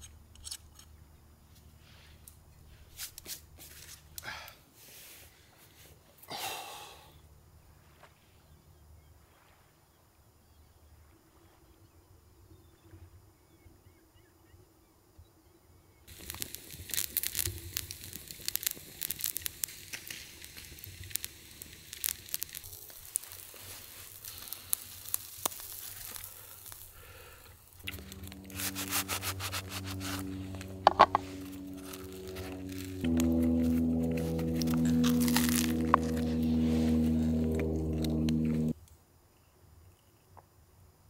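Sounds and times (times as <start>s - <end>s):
food sizzling in a pan: 16.1s - 33.0s.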